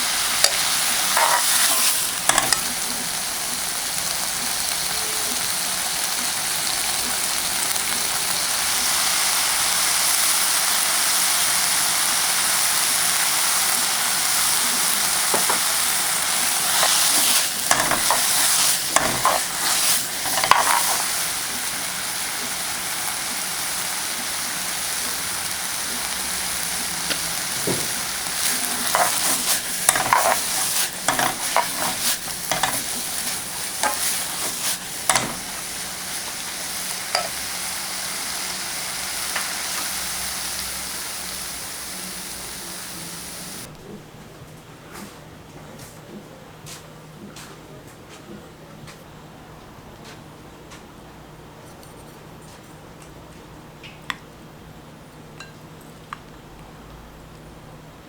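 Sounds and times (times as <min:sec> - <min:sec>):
vegetables sizzling in a pan: 0:00.0 - 0:43.7
spatula scraping and clacking pan: 0:00.3 - 0:03.0, 0:16.5 - 0:21.2, 0:27.1 - 0:37.4.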